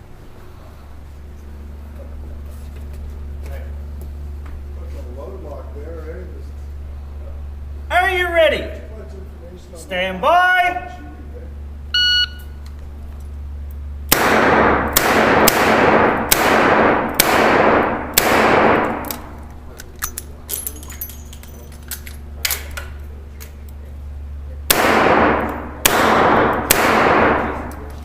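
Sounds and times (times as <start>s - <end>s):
small metallic clicks and clinks: 19.8s - 23.5s.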